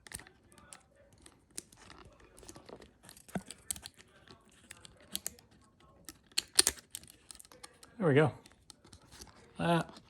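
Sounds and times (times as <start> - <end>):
lock pick clicking and scraping: 3.1 - 9.4.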